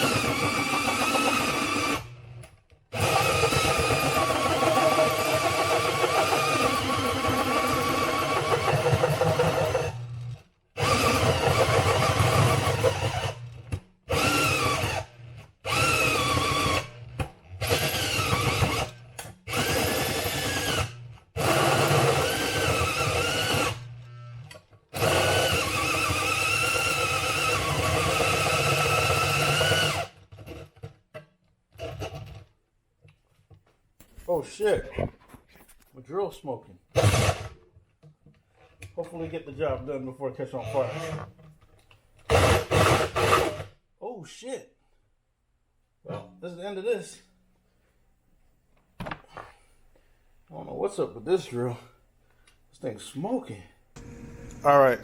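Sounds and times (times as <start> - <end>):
electric drill drilling: 0.0 - 30.7, 37.0 - 37.6, 42.2 - 43.7, 54.0 - 55.0.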